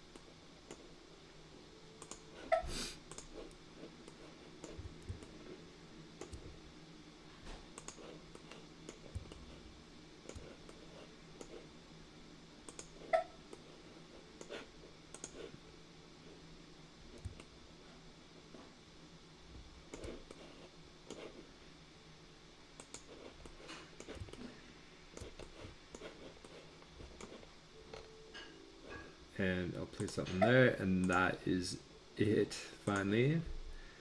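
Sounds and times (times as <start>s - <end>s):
computer mouse clicking: 2.0s - 2.3s, 3.0s - 5.4s, 6.2s - 6.6s, 7.7s - 9.6s, 10.2s - 11.6s, 12.6s - 13.7s, 14.4s - 15.5s, 17.1s - 17.5s, 19.9s - 21.4s, 22.8s - 24.5s, 25.1s - 28.1s.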